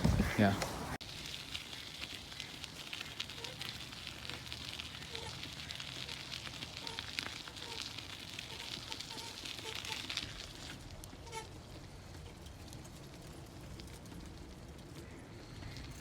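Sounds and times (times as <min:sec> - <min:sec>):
rain patter: 0:00.0 - 0:16.0.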